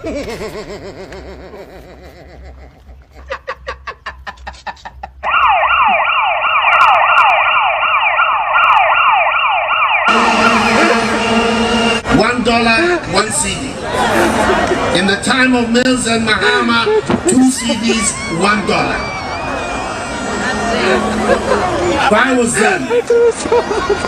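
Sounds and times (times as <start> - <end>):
electronic siren wailing and yelping: 5.2 - 12.0, 17.5 - 21.9.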